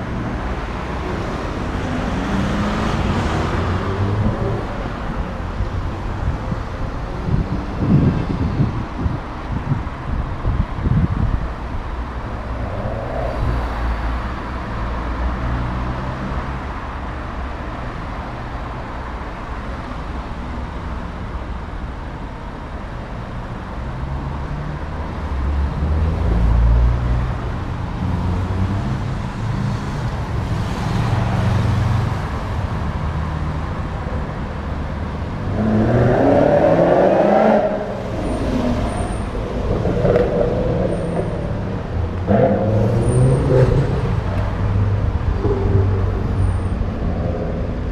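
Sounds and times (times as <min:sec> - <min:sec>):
car engines on road: 0:00.0 - 0:47.9
car accelerating hard: 0:35.4 - 0:46.6.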